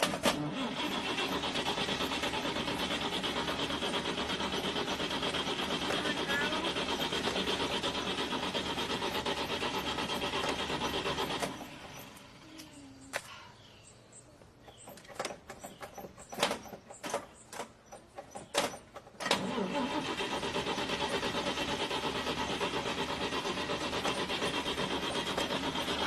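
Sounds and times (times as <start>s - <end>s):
car starter cranking engine: 0.0s - 12.4s, 14.8s - 26.0s
sharp clicks and knocks: 14.6s - 19.4s.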